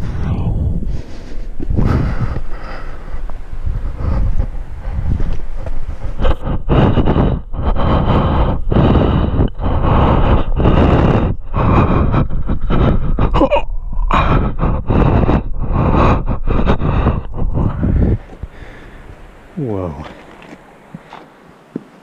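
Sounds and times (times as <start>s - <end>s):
person breathing hard: 0.0s - 21.3s
rumbling mic noise: 0.0s - 21.3s
person grunting: 13.2s - 15.1s, 19.6s - 20.2s.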